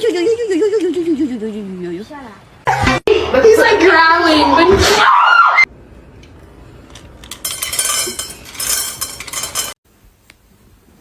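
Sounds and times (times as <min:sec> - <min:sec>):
clattering dishes: 0:07.3 - 0:09.8.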